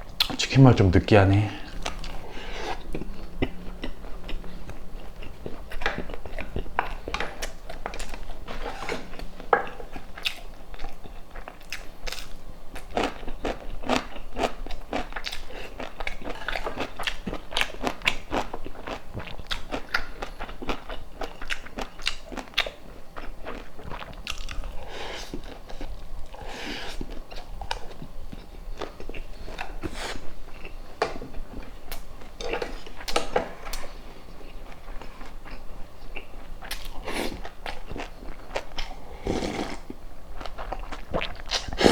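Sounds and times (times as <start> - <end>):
person chewing crunchy food: 1.6 - 41.9.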